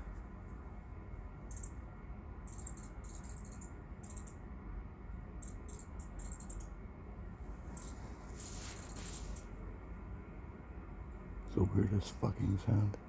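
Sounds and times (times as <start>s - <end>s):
steady low hum: 0.0s - 13.0s
high-pitched clicking chirps: 2.5s - 4.4s.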